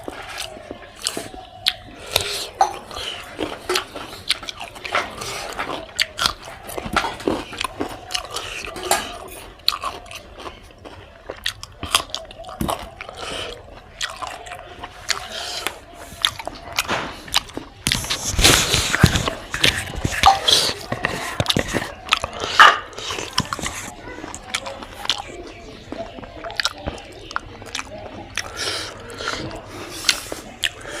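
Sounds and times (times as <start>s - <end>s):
person chewing food: 0.0s - 31.0s.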